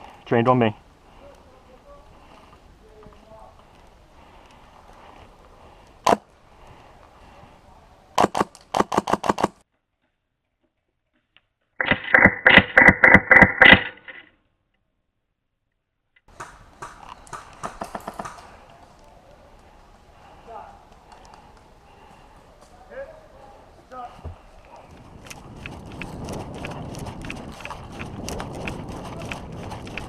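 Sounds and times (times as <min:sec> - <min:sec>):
airsoft rifle fire: 0:08.2 - 0:09.6.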